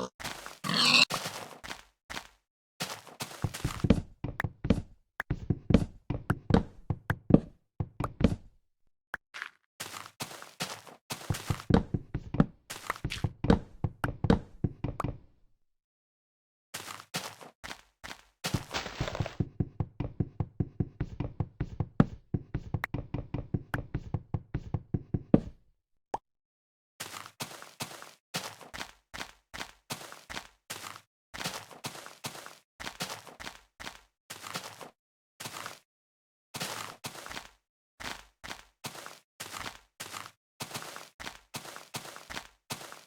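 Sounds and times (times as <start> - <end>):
irregular knocks and thuds: 3.4 - 8.6, 11.2 - 15.3, 18.5 - 25.6.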